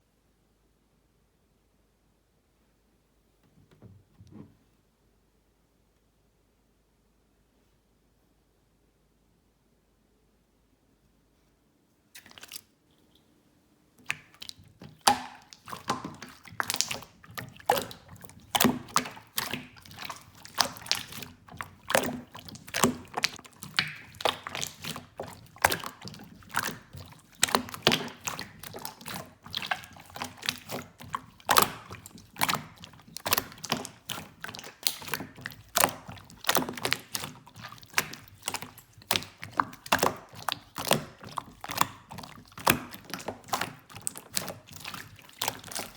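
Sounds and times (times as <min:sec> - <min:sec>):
slime squeezed by hand: 0:14.1 - 0:45.9.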